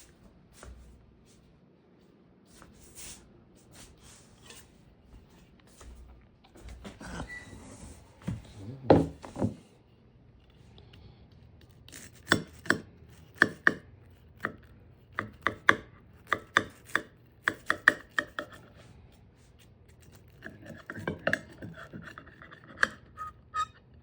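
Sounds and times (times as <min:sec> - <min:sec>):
knife chopping on cutting board: 0:12.1 - 0:18.6.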